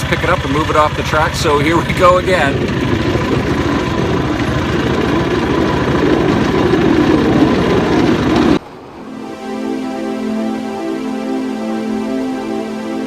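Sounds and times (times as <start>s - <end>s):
soft music: 8.8s - 13.0s.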